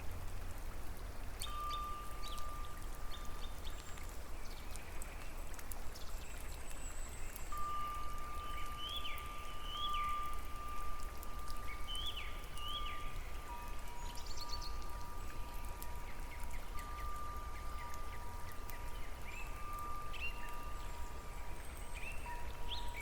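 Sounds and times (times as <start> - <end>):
dripping water: 0.0 - 23.0
rain: 0.0 - 23.0
birds chirping: 11.4 - 23.0.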